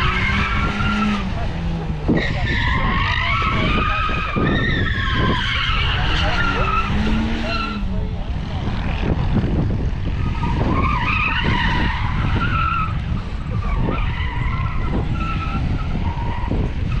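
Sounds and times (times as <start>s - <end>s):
tyres squealing: 0.0s - 8.0s
low engine rumble: 0.0s - 10.5s.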